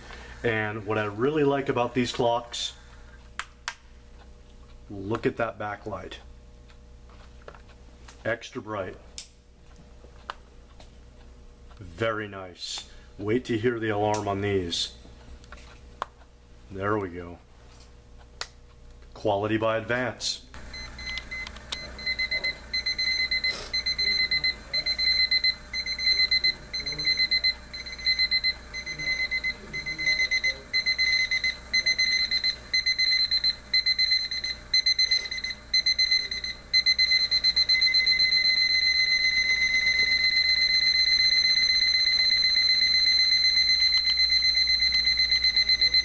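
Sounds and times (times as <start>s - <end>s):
alarm clock beeping: 20.6s - 46.0s.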